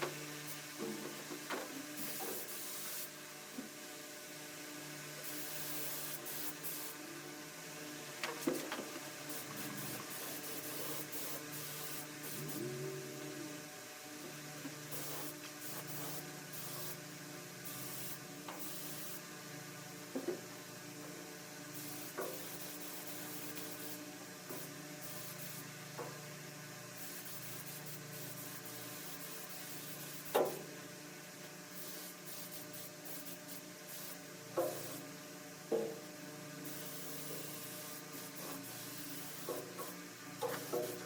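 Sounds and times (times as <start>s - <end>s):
electrical hum: 0.0s - 41.0s
paint spray hissing: 31.8s - 35.1s, 36.6s - 41.0s.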